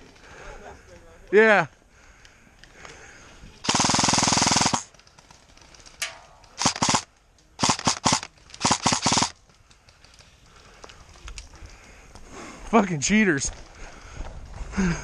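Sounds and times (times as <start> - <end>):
airsoft guns firing bursts: 3.6 - 10.0.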